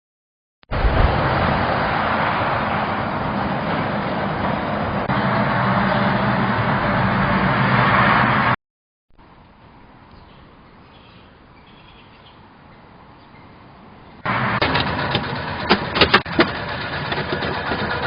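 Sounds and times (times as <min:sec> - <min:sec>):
utility vehicle engine rattling: 0:00.7 - 0:08.5, 0:14.2 - 0:18.0.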